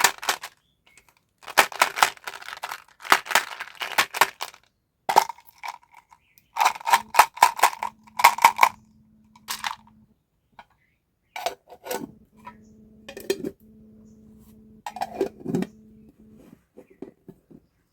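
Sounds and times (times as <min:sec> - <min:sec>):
candies clattering against a dish: 0:00.0 - 0:08.8
faint low hum: 0:06.6 - 0:17.8.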